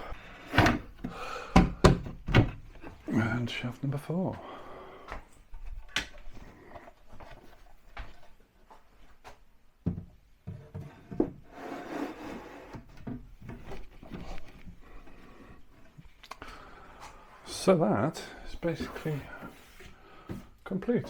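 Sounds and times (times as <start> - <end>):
wood scraping against cabinet: 0.0 - 3.0, 10.4 - 16.0, 18.6 - 21.0
wooden knocks: 0.6 - 3.0.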